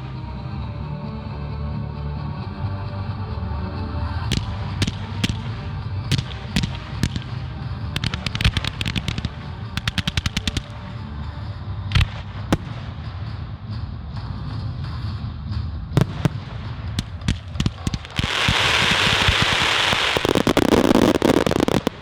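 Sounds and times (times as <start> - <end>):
crackling fireworks reports: 4.2 - 13.5, 16.0 - 22.0
fireworks bangs: 4.3 - 10.8, 16.0 - 22.0
heavy fireworks booms: 4.3 - 10.9, 11.9 - 13.5, 16.0 - 22.0.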